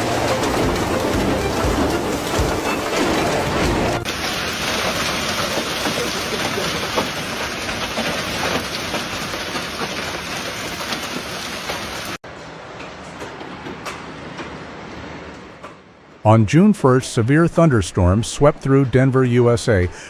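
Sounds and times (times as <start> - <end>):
heavy rain or hail pelting: 0.0 - 12.2
quieter rain hiss: 4.1 - 12.2.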